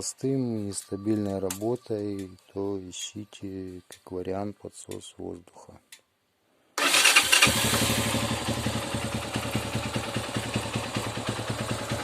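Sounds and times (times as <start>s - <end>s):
motorcycle engine idling: 6.8s - 12.0s.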